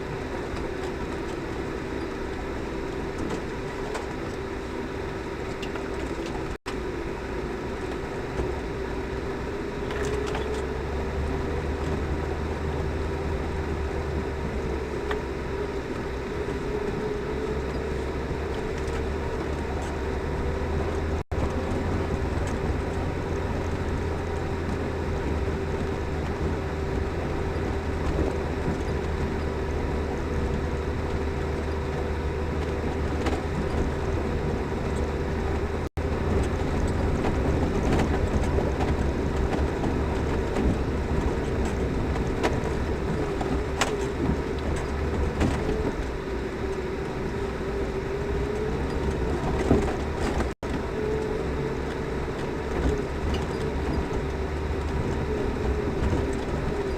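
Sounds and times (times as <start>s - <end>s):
car engine droning with whine: 0.0s - 56.9s
knocks and clicks from bumps: 36.0s - 46.2s.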